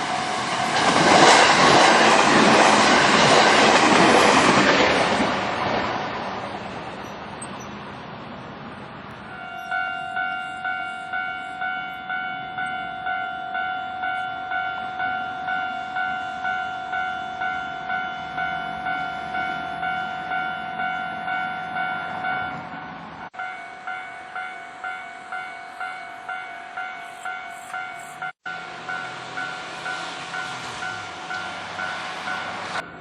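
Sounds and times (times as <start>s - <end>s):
electric train passing: 0.0s - 33.0s
level crossing warning bell: 9.2s - 33.0s.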